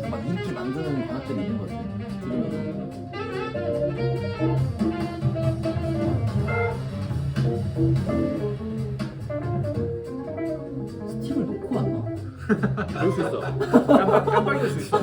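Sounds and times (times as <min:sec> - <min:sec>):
drums played with brushes: 0:00.0 - 0:15.0
small-combo jazz music: 0:00.0 - 0:15.0
walking bass line: 0:01.1 - 0:15.0.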